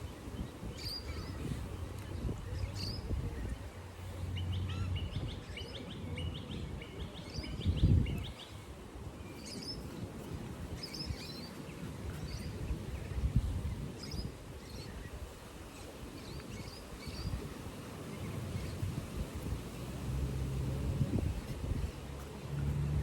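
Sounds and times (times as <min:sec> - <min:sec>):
small birds chirping: 0:00.0 - 0:23.0
low rumbling noise: 0:18.2 - 0:23.0.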